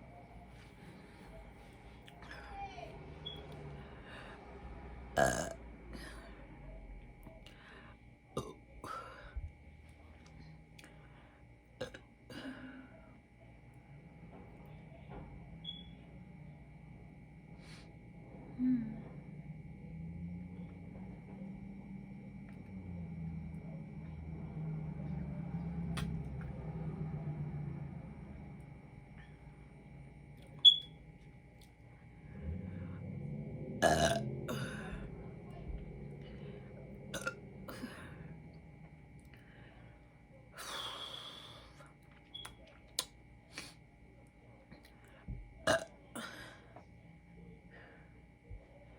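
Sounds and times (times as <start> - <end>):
woman burping: 5.2 - 5.6, 8.4 - 9.0, 11.8 - 12.7, 33.8 - 35.1, 37.1 - 38.3, 45.6 - 46.5.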